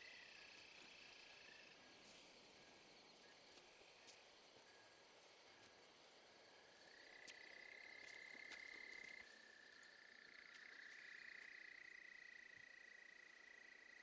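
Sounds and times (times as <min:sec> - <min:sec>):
faint ticks: 0:03.2 - 0:05.8, 0:06.9 - 0:11.9.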